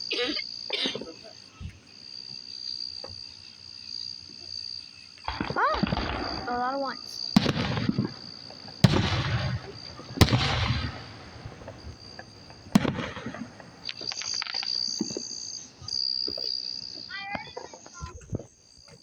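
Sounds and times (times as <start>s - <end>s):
crickets trilling: 0.0s - 19.0s
fireworks bursting: 5.2s - 18.6s.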